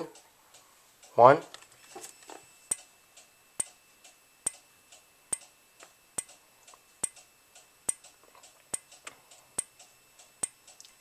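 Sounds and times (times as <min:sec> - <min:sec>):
strobe flash clicks: 0:02.6 - 0:10.9.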